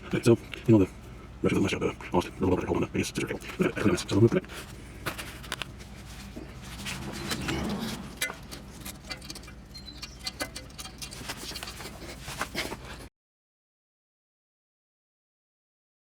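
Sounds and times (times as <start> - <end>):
low hum: 0.0 - 13.1
tools clicking and rattling: 4.2 - 13.1.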